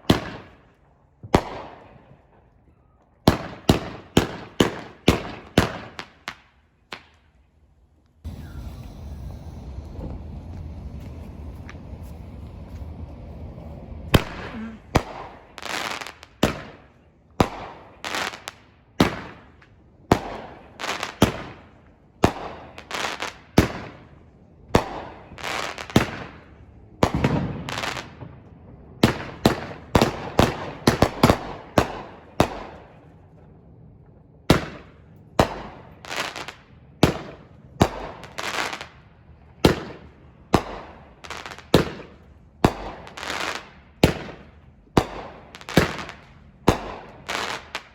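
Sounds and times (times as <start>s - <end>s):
fireworks booming and crackling: 0.0s - 2.5s, 3.2s - 7.2s, 8.2s - 47.9s.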